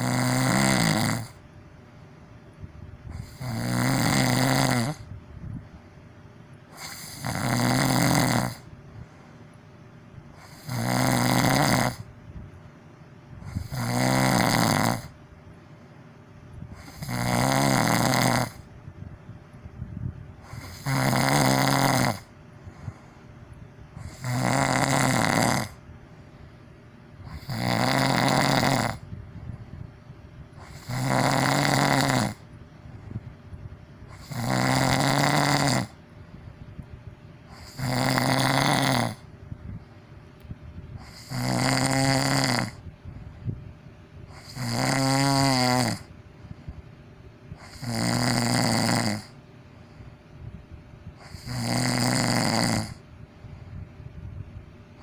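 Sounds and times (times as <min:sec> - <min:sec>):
person snoring loudly: 0:00.0 - 0:01.4, 0:03.1 - 0:05.1, 0:06.7 - 0:08.7, 0:10.4 - 0:12.1, 0:13.4 - 0:15.2, 0:16.7 - 0:18.7, 0:20.4 - 0:23.0, 0:24.0 - 0:25.8, 0:27.2 - 0:29.2, 0:30.6 - 0:32.5, 0:34.1 - 0:36.0, 0:37.5 - 0:39.3, 0:41.0 - 0:42.9, 0:44.3 - 0:46.1, 0:47.6 - 0:49.4, 0:51.2 - 0:53.1.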